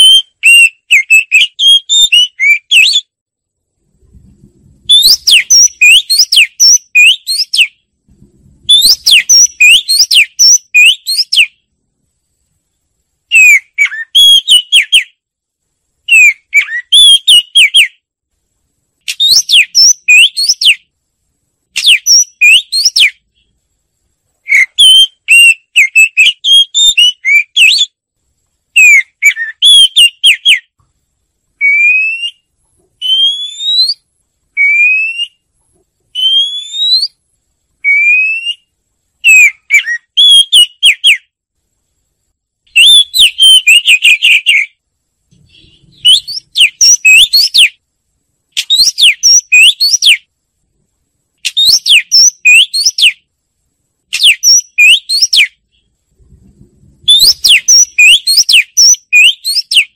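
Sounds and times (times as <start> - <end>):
bird singing whistled phrases: 0.0 - 3.1, 4.9 - 7.8, 8.7 - 11.6, 13.3 - 15.2, 16.1 - 18.0, 19.1 - 20.8, 21.8 - 23.2, 24.5 - 28.0, 28.8 - 30.7, 31.6 - 34.0, 34.6 - 35.4, 36.1 - 37.2, 37.8 - 41.3, 42.8 - 44.8, 45.4 - 47.8, 48.6 - 50.3, 51.4 - 53.2, 54.2 - 55.6, 57.1 - 59.9.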